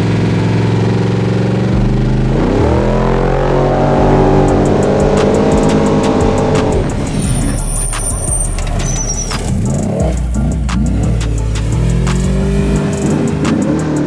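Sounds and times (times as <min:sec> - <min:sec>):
rally car engine revving: 0:00.0 - 0:14.0
sharp ticks: 0:04.5 - 0:14.0.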